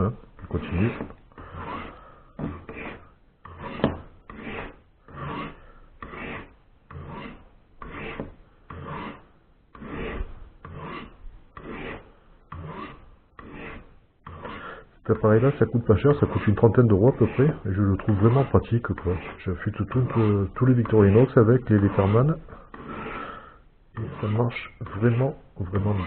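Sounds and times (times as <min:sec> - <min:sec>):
knife blade rasping on sharpener: 0:00.6 - 0:09.2, 0:09.8 - 0:14.6.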